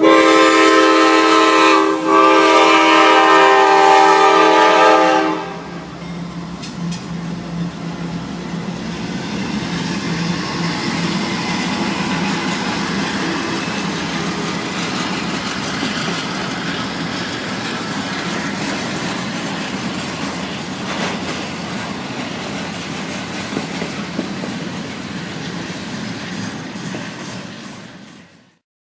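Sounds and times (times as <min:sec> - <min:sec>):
locomotive horn: 0:00.0 - 0:05.9
steel wheels clattering on rail: 0:05.9 - 0:28.4.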